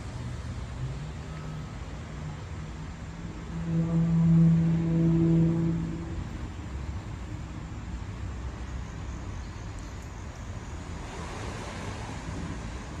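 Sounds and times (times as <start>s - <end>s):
wind noise on microphone: 0.0s - 9.0s
outdoor rumble: 0.0s - 9.1s.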